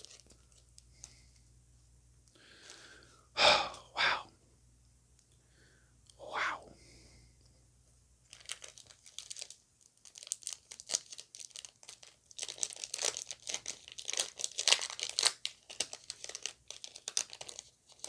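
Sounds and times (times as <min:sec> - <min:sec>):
foil wrapper crinkling: 0:00.0 - 0:01.2, 0:08.3 - 0:18.0.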